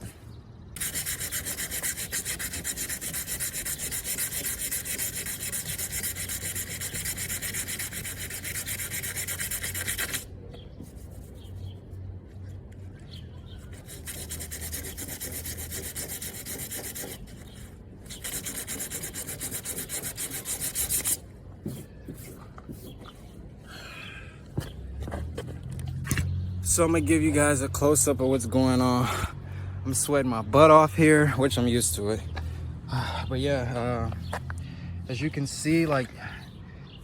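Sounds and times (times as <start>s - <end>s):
sandpaper scrubbing metal panel: 0.8s - 11.6s, 13.6s - 23.0s.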